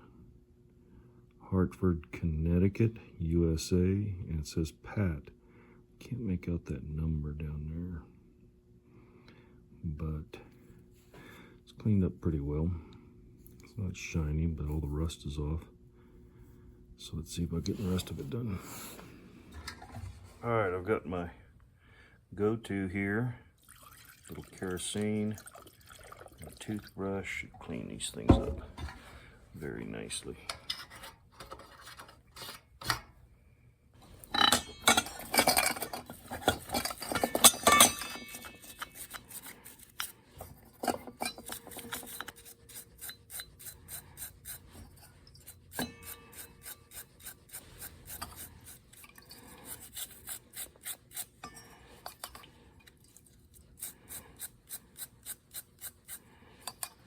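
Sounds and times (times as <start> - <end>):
toothbrush scrubbing metal parts: 34.2 - 57.0.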